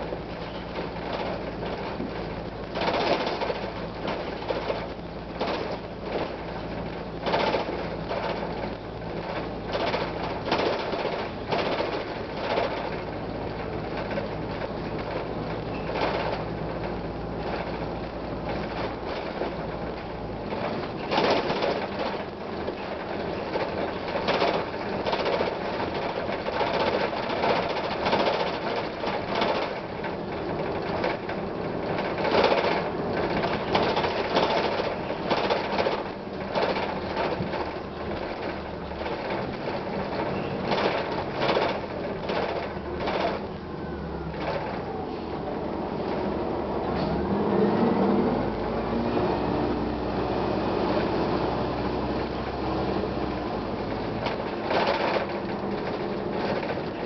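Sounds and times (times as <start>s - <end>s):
bus diesel engine running: 0.0s - 57.0s
body rattles and squeaks: 14.0s - 16.6s.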